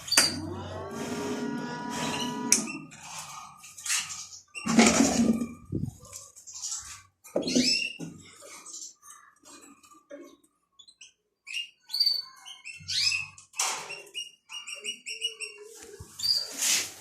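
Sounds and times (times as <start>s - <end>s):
small birds chirping: 5.4s - 16.9s.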